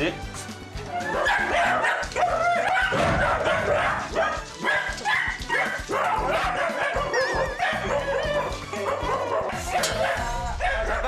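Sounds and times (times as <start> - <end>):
dogs barking and yipping: 0.5 - 11.0.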